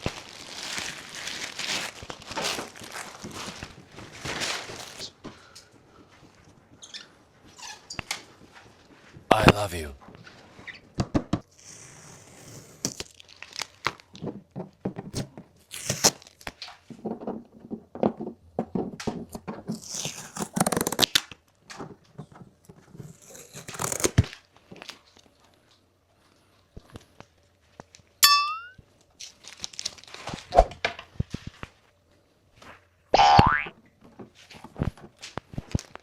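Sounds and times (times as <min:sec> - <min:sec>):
plastic crinkling: 0:00.0 - 0:05.2, 0:12.9 - 0:14.3, 0:19.7 - 0:21.2, 0:29.0 - 0:30.5
plastic wrap and tape tearing: 0:00.0 - 0:05.2, 0:11.5 - 0:14.2, 0:15.2 - 0:16.7, 0:19.7 - 0:21.4, 0:22.8 - 0:25.2, 0:29.2 - 0:30.6.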